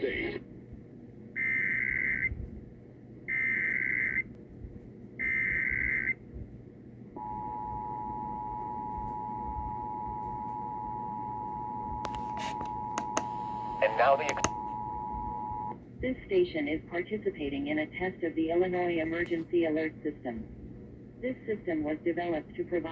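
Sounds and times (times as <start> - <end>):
data bursts: 5.2 - 6.2.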